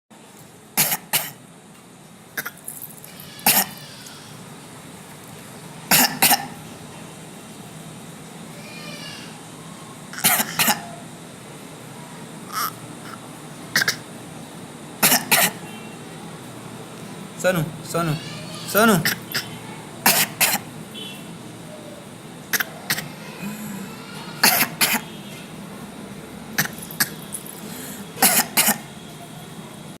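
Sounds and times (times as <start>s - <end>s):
baby coughing: 0.8s - 1.4s, 2.4s - 4.0s, 5.9s - 6.6s, 10.1s - 11.0s, 12.5s - 14.1s, 15.0s - 15.8s, 18.1s - 20.7s, 22.5s - 23.6s, 24.4s - 25.2s, 26.6s - 27.3s, 28.2s - 28.9s
man coughing: 15.0s - 15.6s, 18.8s - 19.5s, 28.2s - 28.8s.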